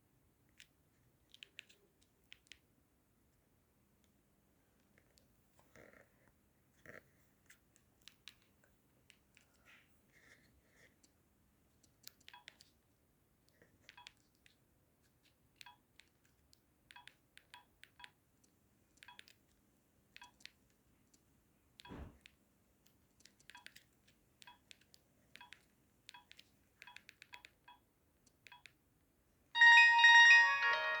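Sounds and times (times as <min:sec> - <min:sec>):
short key beeps: 0:29.6 - 0:31.0.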